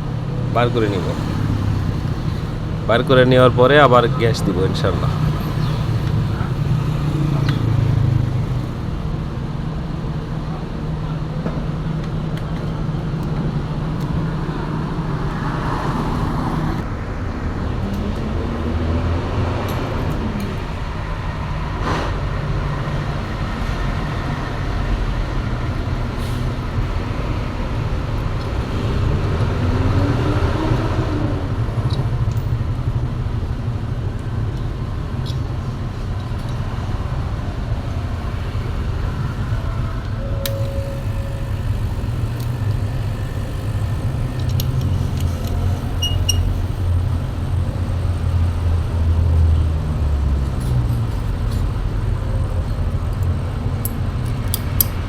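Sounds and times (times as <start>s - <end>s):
compressor humming: 37.6s - 48.6s.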